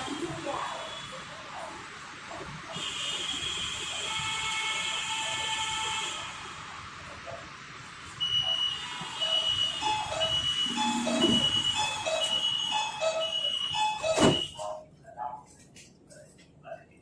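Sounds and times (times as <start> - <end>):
two-tone door warning beeps: 8.2 - 14.8
train doors thudding shut: 10.9 - 14.6.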